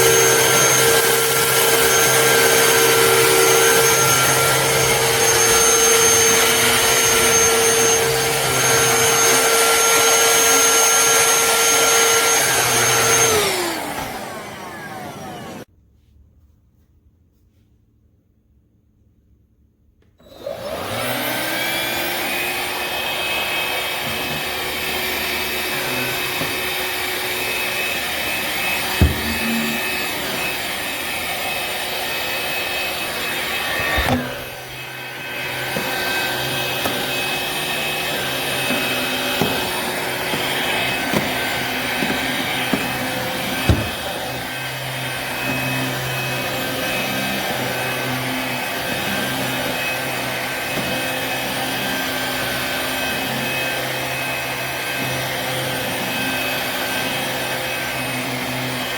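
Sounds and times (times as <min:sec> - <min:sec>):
vacuum motor whine: 0:00.0 - 0:15.7, 0:20.2 - 0:58.9
sharp knocks: 0:43.6 - 0:44.1.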